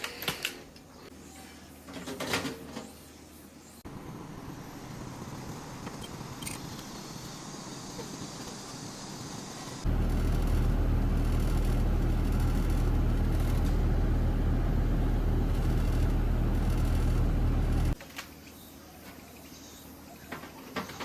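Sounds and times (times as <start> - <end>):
air conditioner unit humming: 3.8 - 18.0.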